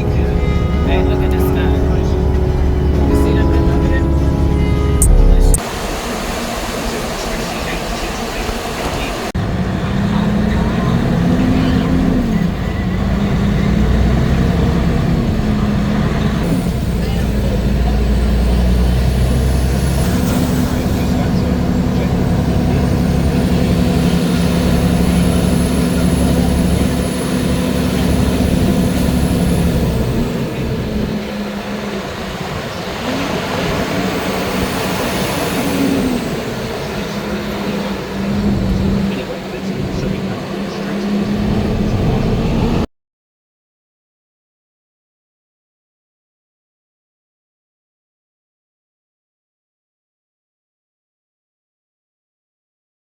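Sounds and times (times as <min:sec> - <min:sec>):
faint high whine: 0:00.0 - 0:09.3
truck engine running: 0:00.0 - 0:42.8
road noise: 0:00.0 - 0:42.9.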